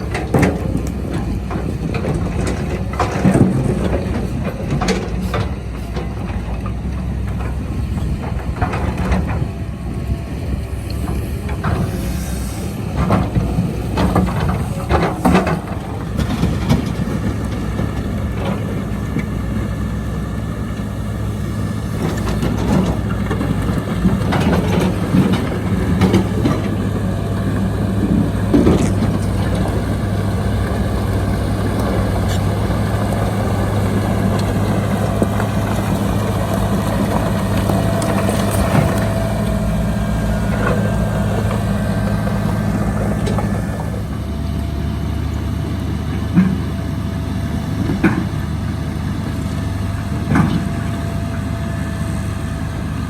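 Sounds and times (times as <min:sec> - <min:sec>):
diesel earthmoving machinery running: 0:00.0 - 0:53.0
metal and rock knocks and scrapes: 0:28.0 - 0:29.7.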